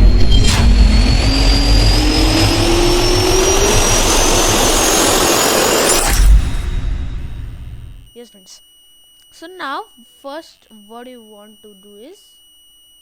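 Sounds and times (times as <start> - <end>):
jet-like whoosh with rising tones: 0.0 - 8.0.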